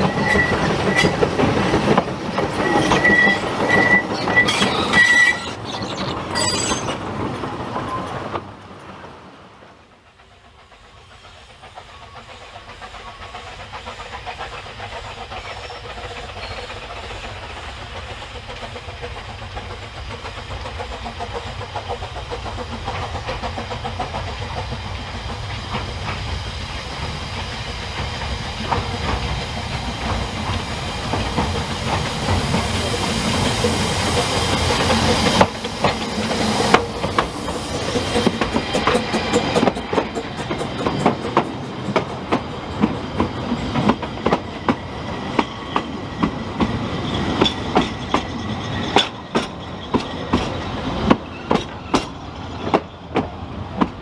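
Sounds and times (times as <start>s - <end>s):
train running: 0.0s - 54.0s
wheels clicking over rails: 19.6s - 54.0s.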